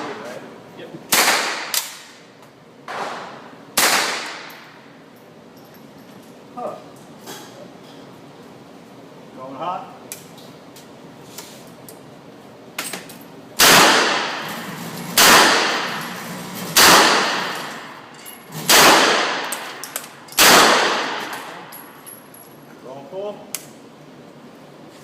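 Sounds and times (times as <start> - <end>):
submachine gun single shots: 1.1 - 2.0, 3.8 - 4.6, 13.6 - 16.0, 16.7 - 17.9, 18.6 - 21.6.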